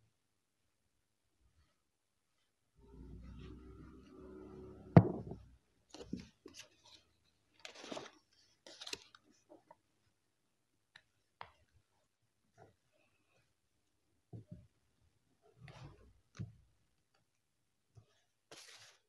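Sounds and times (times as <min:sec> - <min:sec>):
low hum: 0:02.8 - 0:05.6
paper rustling and crinkling: 0:05.9 - 0:09.5, 0:18.5 - 0:19.0.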